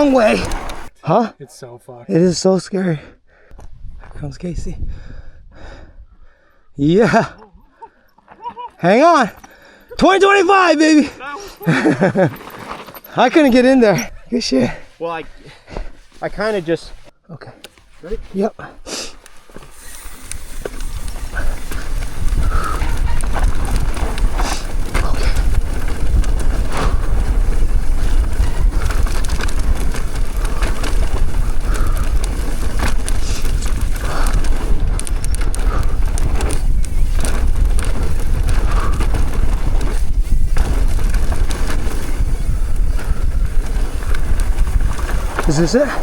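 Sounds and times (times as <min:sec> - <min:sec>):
bike rattling over bumps: 0:00.0 - 0:00.9, 0:08.8 - 0:14.1, 0:19.3 - 0:46.0
tyres rolling on dirt trail: 0:00.0 - 0:01.2, 0:06.8 - 0:17.1, 0:17.8 - 0:46.0
wind on microphone: 0:03.6 - 0:06.2, 0:20.8 - 0:46.0.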